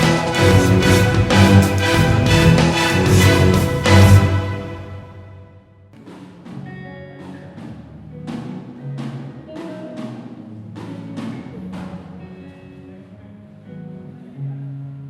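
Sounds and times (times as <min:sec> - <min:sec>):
sustained keyboard or bass notes: 0:00.0 - 0:05.6.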